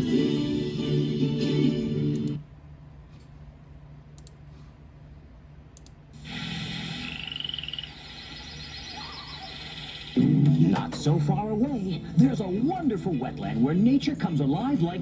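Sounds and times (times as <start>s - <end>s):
tape hiss and hum: 0.0s - 15.0s.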